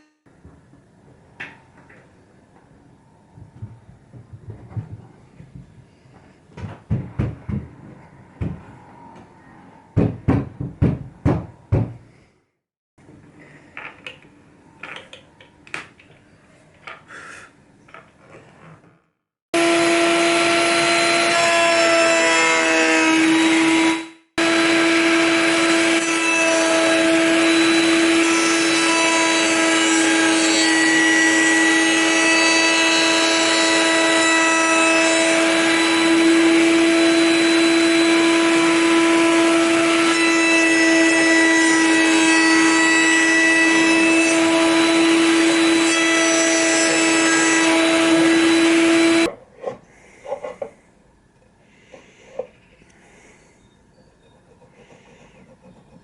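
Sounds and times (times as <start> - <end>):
wooden knocks and clatter: 3.4 - 8.7.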